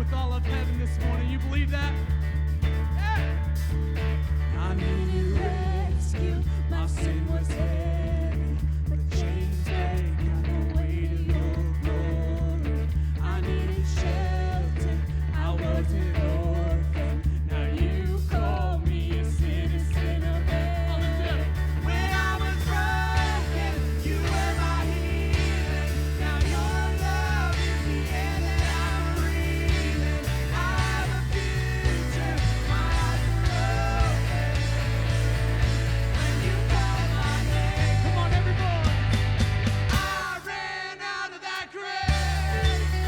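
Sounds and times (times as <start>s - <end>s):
held bass notes: 0.0s - 40.6s, 42.1s - 43.0s
person singing: 20.0s - 39.0s, 39.9s - 43.0s
band playing worship song: 20.1s - 43.0s.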